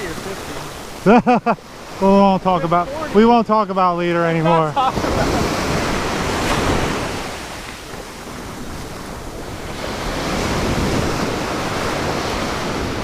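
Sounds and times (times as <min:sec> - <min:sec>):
ocean surf washing onto beach: 0:00.0 - 0:13.0
wind buffeting microphone: 0:04.8 - 0:13.0.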